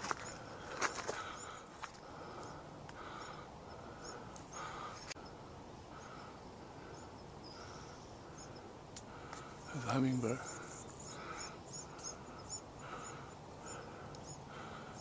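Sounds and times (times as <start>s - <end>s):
hummingbird chip calls: 2.4s - 15.0s.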